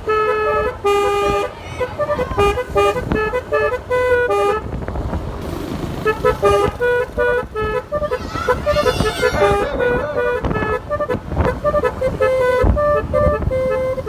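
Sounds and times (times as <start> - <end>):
musical horn playing short notes: 6.2 - 14.0.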